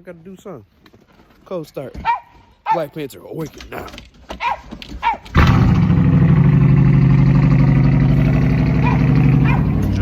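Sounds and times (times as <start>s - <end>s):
dog barking: 2.0s - 2.9s, 4.4s - 5.3s, 8.6s - 10.0s
car engine starting and running: 5.4s - 10.0s.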